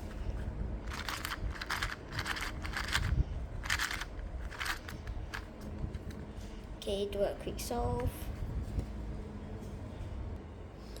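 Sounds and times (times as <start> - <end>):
plastic puzzle cube clicking: 0.9 - 5.4.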